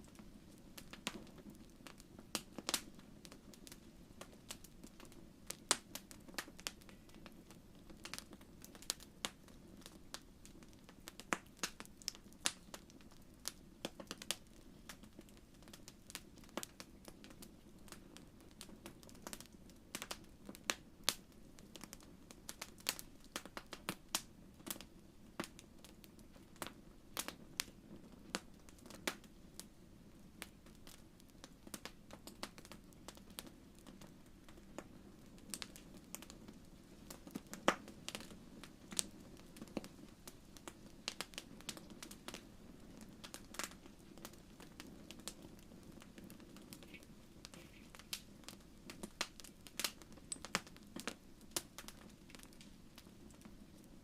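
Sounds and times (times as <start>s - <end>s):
wood fire crackling: 0.0s - 54.0s.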